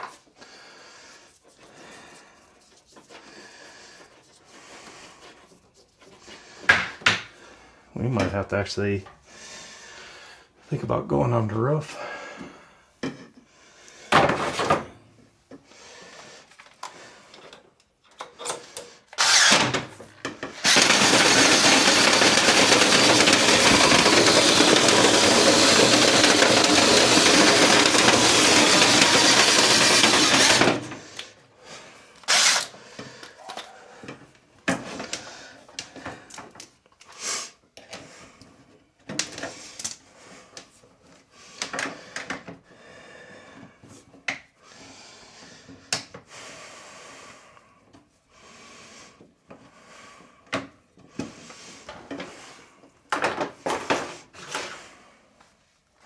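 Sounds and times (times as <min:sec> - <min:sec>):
power drill running: 0:19.2 - 0:31.3, 0:32.2 - 0:32.8.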